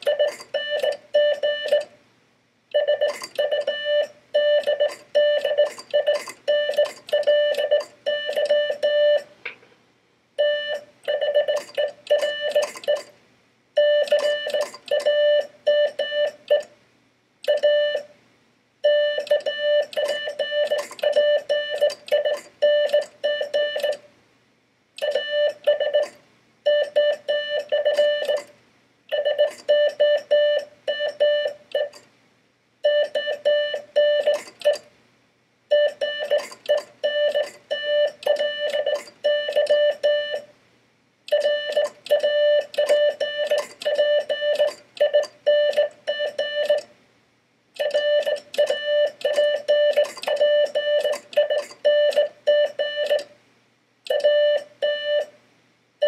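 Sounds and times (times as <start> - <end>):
morse code beeps: 0.0 - 1.9, 2.7 - 9.3, 10.4 - 13.1, 13.8 - 16.7, 17.5 - 18.1, 18.8 - 24.0, 25.0 - 28.5, 29.1 - 32.0, 32.8 - 34.9, 35.7 - 40.5, 41.3 - 46.9, 47.8 - 53.3, 54.1 - 55.3.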